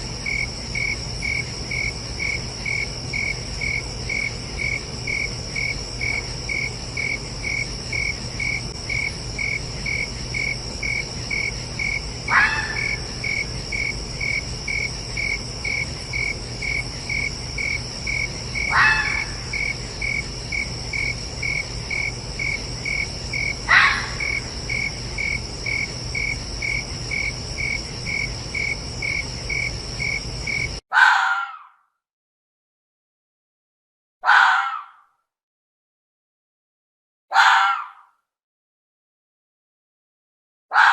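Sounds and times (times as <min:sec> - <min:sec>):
crickets chirping: 0:00.0 - 0:30.8
fox barking: 0:12.3 - 0:13.4, 0:18.7 - 0:19.6, 0:23.6 - 0:24.4, 0:30.9 - 0:31.8, 0:34.2 - 0:35.1, 0:37.3 - 0:38.1.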